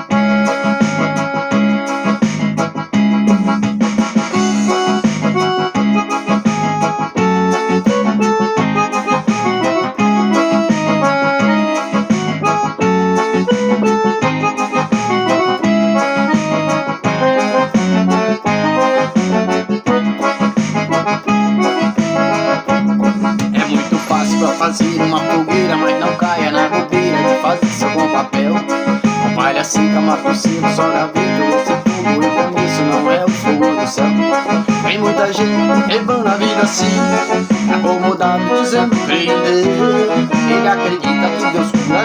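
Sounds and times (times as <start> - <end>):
electronic keyboard melody: 0.0 - 42.0.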